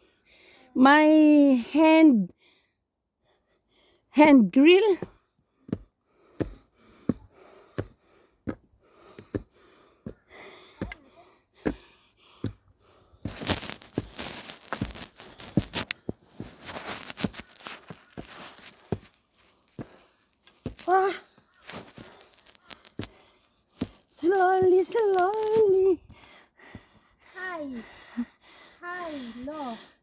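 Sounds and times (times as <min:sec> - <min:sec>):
footsteps climbing stairs: 0:04.9 - 0:23.1
clothing or wind rustling on microphone: 0:13.3 - 0:20.0.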